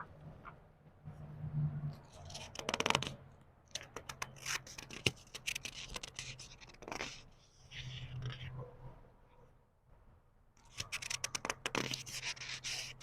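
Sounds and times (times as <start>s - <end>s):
book pages turning: 2.3s - 8.5s, 10.7s - 13.0s.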